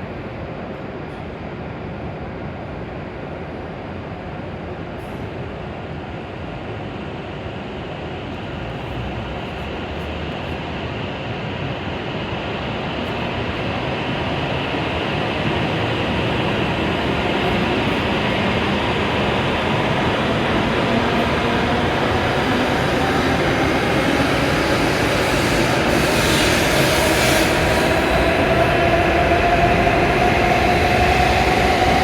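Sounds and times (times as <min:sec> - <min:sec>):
train pulling out: 0:08.2 - 0:32.0.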